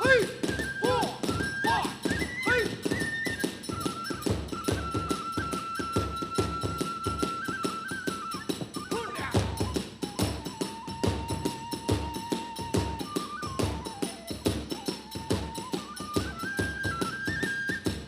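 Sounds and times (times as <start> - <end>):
bamboo flute melody: 0.0 - 18.0
small hand cymbals: 0.0 - 18.0.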